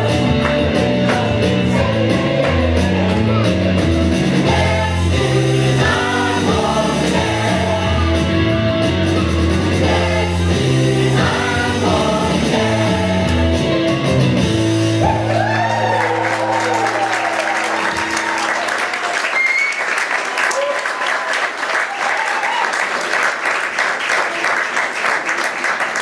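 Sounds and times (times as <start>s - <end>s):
group singing with band: 0.0s - 13.9s
audience applause and cheering: 14.8s - 26.0s.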